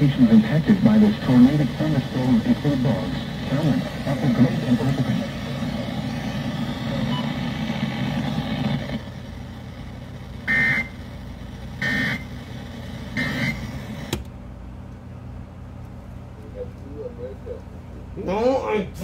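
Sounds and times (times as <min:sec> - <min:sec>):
steady noisy hum: 0:00.0 - 0:19.0.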